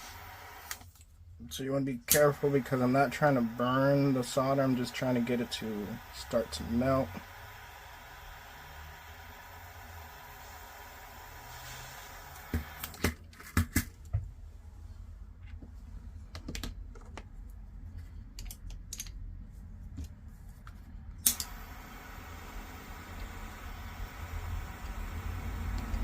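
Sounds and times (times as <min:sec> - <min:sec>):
faint steady hiss: 0:00.0 - 0:13.0, 0:21.2 - 0:26.0.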